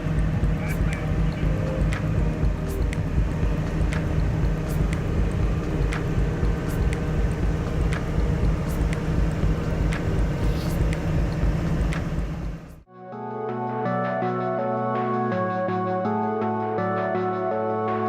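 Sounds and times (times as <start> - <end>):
engine running steadily: 0.0 - 12.9.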